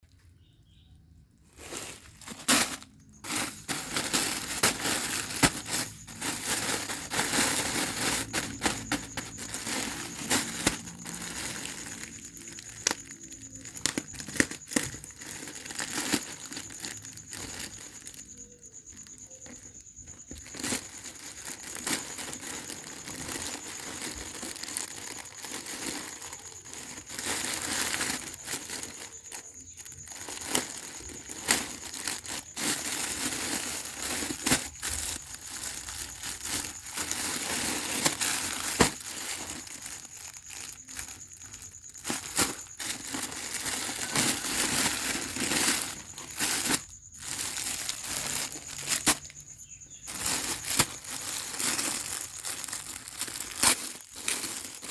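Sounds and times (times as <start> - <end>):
packaging crinkling and rustling: 1.5 - 54.9.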